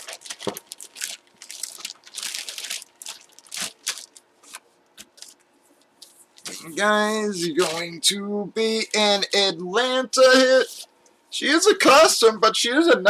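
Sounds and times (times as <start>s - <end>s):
packaging crinkling: 0.0s - 6.6s.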